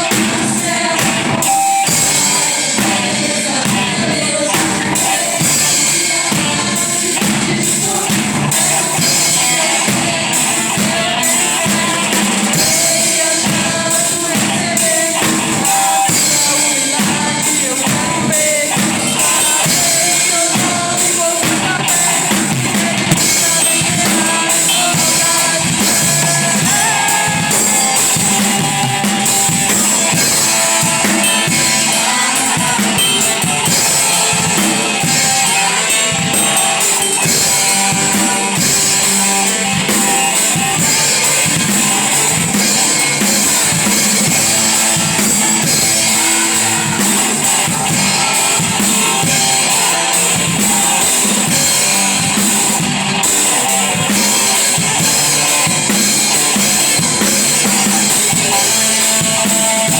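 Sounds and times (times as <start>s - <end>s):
band music with drums and guitar: 0.0s - 59.9s.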